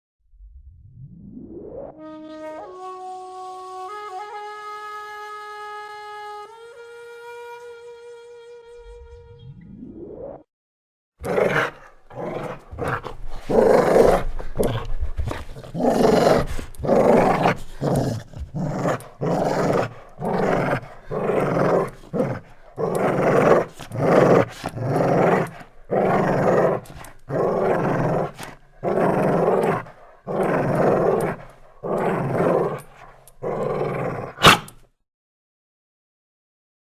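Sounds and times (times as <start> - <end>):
dog growling: 11.2 - 34.8.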